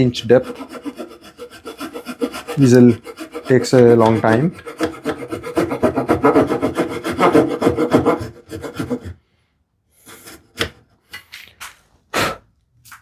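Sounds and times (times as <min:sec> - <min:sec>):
hand saw cutting wood: 0:00.0 - 0:09.2, 0:10.0 - 0:10.9.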